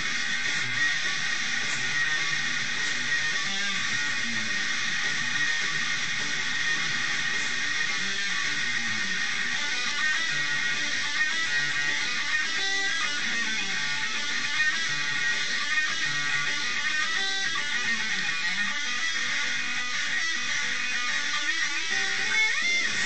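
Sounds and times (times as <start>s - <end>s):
electric guitar: 0.0s - 23.0s
heavy metal song: 0.0s - 23.0s.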